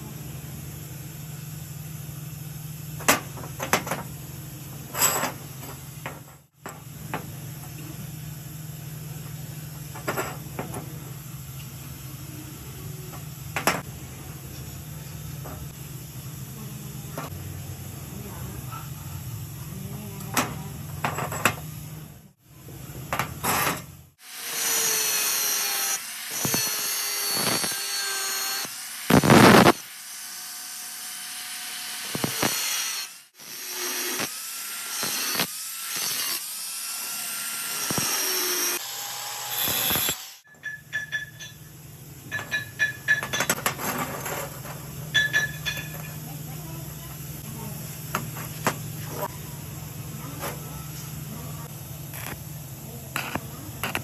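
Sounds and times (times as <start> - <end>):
power tool cutting steel: 23.5 - 41.6.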